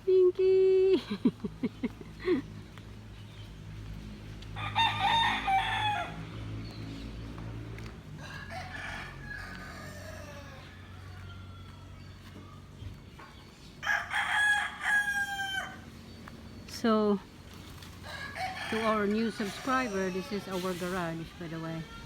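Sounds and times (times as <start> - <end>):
rooster crowing: 4.6 - 6.4, 8.2 - 12.4, 13.8 - 15.9, 18.0 - 20.8.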